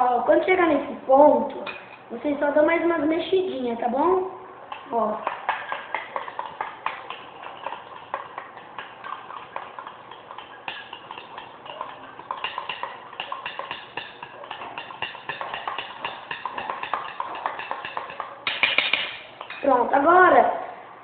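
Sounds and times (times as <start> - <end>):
utensil knocking against container: 4.7 - 19.6
slime being stirred: 4.7 - 19.8.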